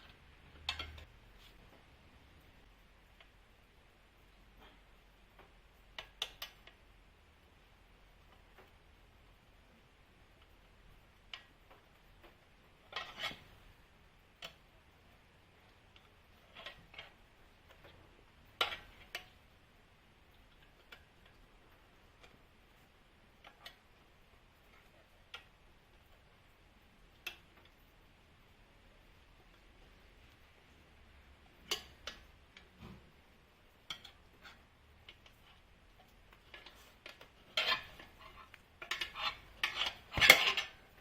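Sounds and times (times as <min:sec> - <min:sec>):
tools clicking and knocking: 0:00.1 - 0:01.1, 0:36.3 - 0:41.0.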